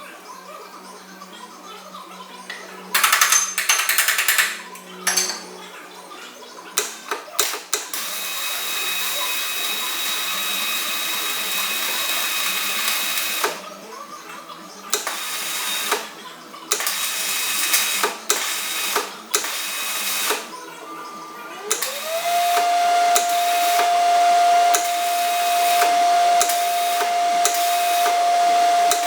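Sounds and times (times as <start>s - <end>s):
power tool whining: 7.8s - 13.7s, 14.9s - 29.0s.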